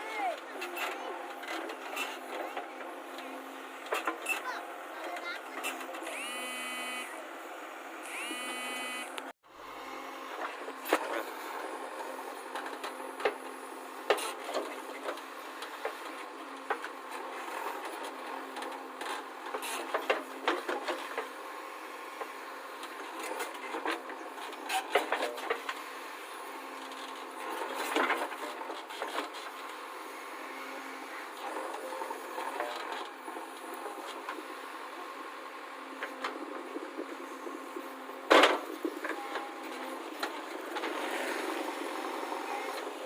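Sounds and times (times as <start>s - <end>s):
backhoe loader running: 0.0s - 43.0s.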